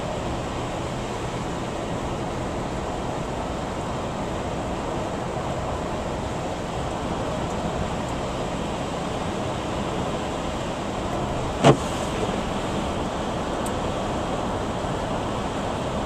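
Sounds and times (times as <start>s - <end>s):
car driving rushing noise: 0.0s - 16.0s.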